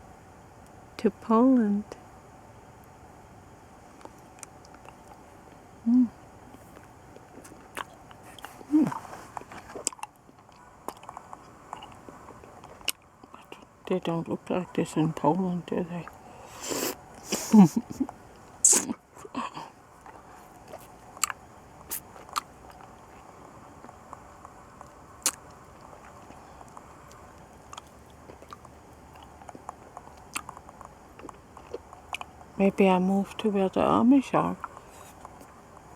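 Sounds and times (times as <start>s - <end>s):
wet mouth clicks and smacks: 27.7s - 32.3s.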